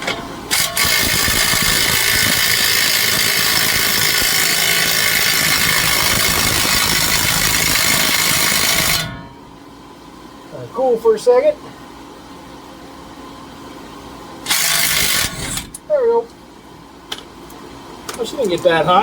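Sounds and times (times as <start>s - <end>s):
impact wrench hammering: 0.0s - 9.4s, 14.5s - 15.8s.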